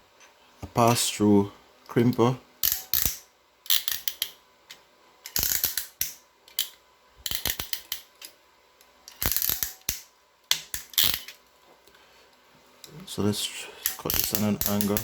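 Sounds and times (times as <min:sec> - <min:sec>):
crimp tool ratchet clicking: 0:02.6 - 0:04.4, 0:05.3 - 0:06.7, 0:07.3 - 0:08.1, 0:09.1 - 0:11.3, 0:13.8 - 0:15.0.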